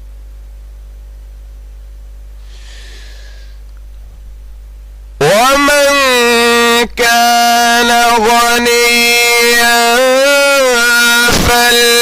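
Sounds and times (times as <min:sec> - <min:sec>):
low electrical hum: 0:00.0 - 0:12.0
person breathing in: 0:02.4 - 0:03.6.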